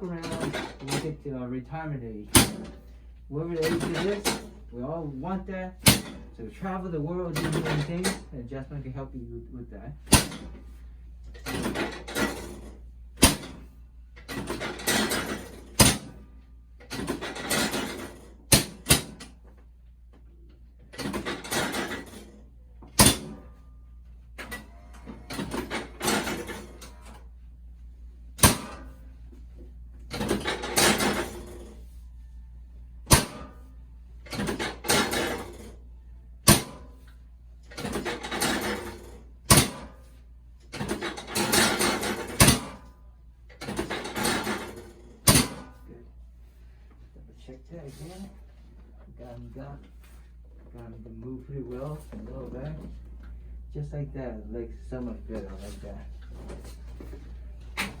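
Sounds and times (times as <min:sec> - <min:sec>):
sharp clicks and knocks: 0:03.6 - 0:04.6, 0:10.1 - 0:10.7, 0:14.2 - 0:16.2, 0:16.8 - 0:23.6, 0:28.4 - 0:29.0.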